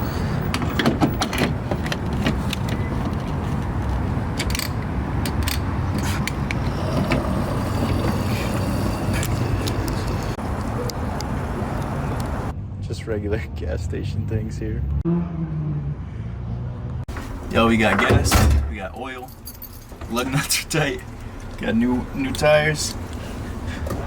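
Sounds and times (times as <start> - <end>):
car engine rumbling: 0.0 - 12.6.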